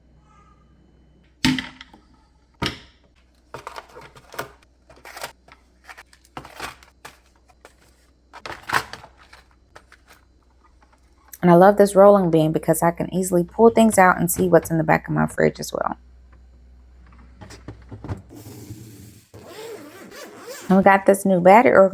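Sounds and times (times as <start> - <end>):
hard items knocking on plastic: 2.6 - 7.8, 13.5 - 14.8, 17.1 - 18.3.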